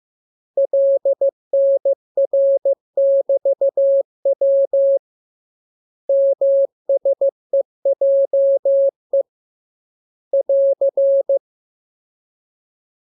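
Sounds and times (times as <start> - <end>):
morse code beeps: 0.6 - 5.0, 6.1 - 9.2, 10.4 - 11.4.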